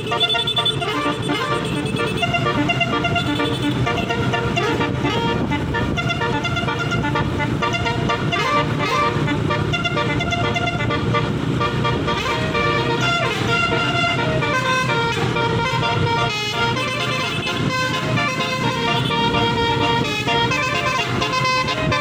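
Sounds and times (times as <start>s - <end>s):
bus engine hum: 0.0s - 22.0s
musical air horn playing tune: 0.0s - 22.0s.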